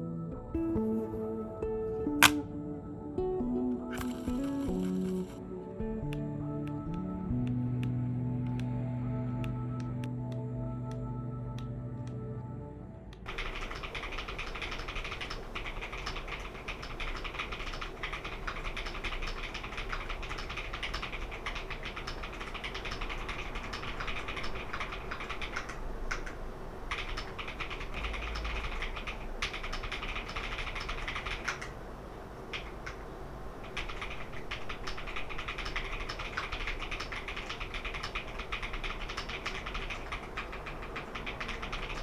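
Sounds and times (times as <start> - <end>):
mechanical keyboard key clacks: 2.2 - 2.4, 3.9 - 5.4.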